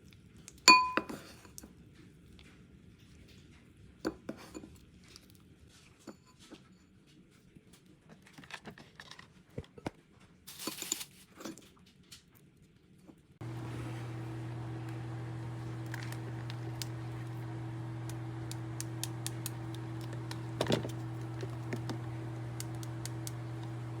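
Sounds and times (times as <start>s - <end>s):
steady low hum: 13.4s - 24.0s.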